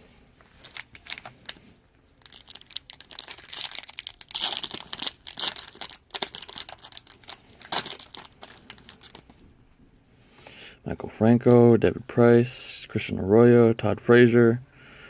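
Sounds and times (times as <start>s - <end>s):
wrapper crinkling and tearing: 0.6s - 9.4s.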